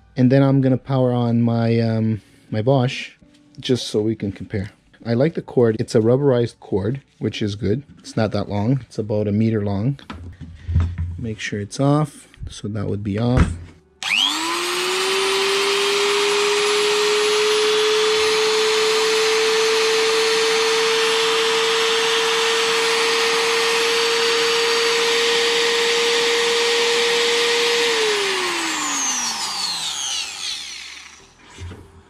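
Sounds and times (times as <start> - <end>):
router motor whining: 14.0 - 31.4.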